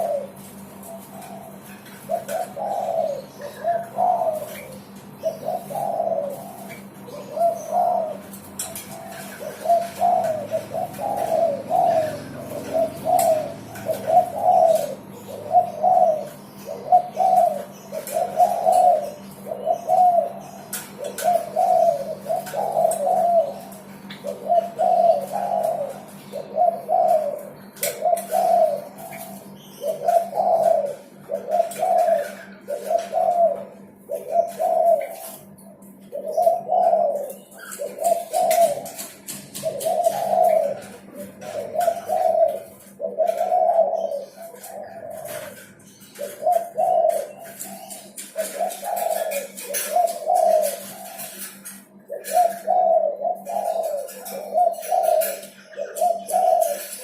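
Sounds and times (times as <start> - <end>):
dove cooing: 0.0 - 57.0.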